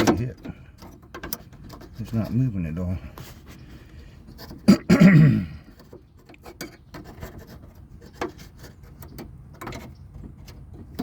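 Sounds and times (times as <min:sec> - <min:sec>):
latch scraping and clicking: 0:00.0 - 0:02.4, 0:05.7 - 0:11.0.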